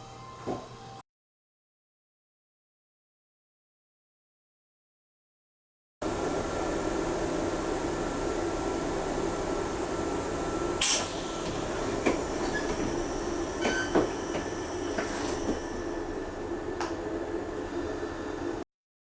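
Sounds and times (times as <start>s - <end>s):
train humming at platform: 6.0s - 18.6s
train doors shutting knock: 10.8s - 18.6s.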